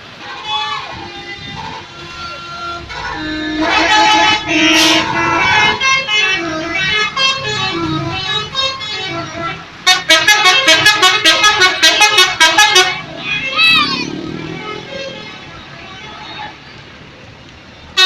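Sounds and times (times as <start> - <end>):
musical air horn melody: 0.5 - 15.5.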